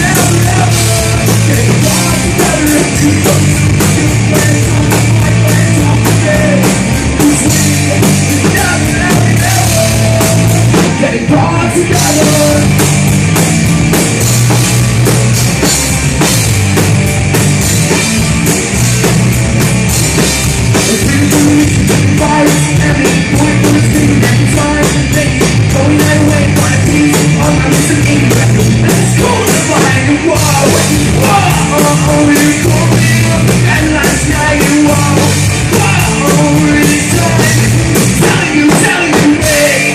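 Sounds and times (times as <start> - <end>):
person singing: 0.0 - 12.8, 20.8 - 39.9
drum kit: 0.0 - 39.9
electric guitars and bass: 0.0 - 39.9.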